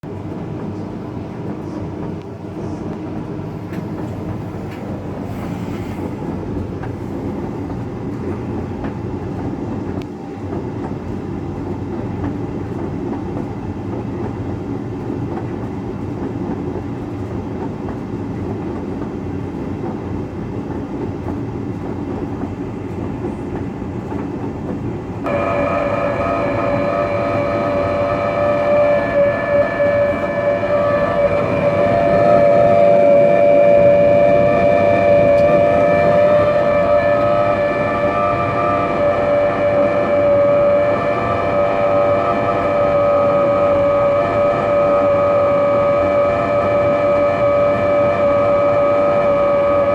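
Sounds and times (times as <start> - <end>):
tumble dryer rumbling: 25.2 - 49.9
high squeal: 25.3 - 49.9.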